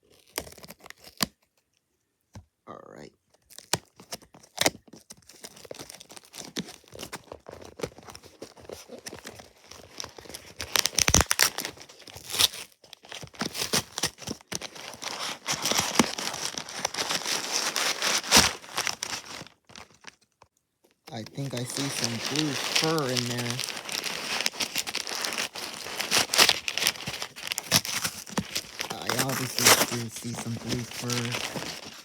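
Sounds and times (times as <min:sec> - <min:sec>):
packaging crinkling and tearing: 0:00.0 - 0:01.4, 0:03.4 - 0:20.5, 0:21.1 - 0:32.0.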